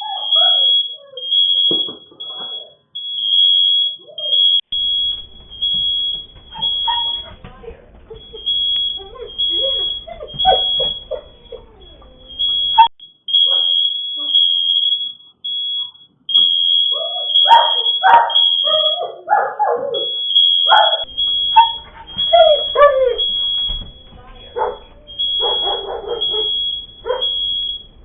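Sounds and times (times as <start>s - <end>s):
smoke alarm high piercing beep: 0.0s - 19.2s, 20.0s - 28.0s
dog barking and yelping: 6.4s - 12.9s, 16.9s - 27.6s.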